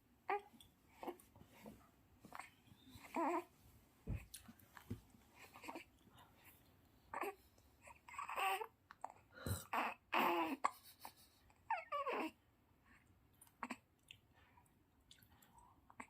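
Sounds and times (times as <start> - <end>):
baby whimpering: 2.3 - 3.5, 7.1 - 10.7, 11.6 - 12.4
baby hiccupping: 8.1 - 10.7.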